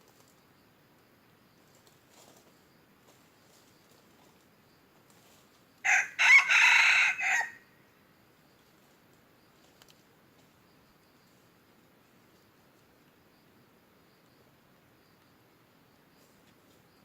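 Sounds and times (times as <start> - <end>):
rooster crowing: 5.8 - 7.8.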